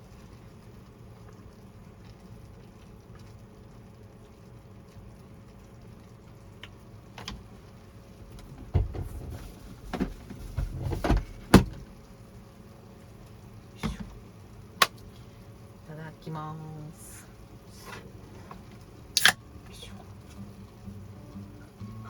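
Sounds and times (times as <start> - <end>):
low steady hum: 0.0 - 22.0
knocks and thumps: 8.5 - 11.8.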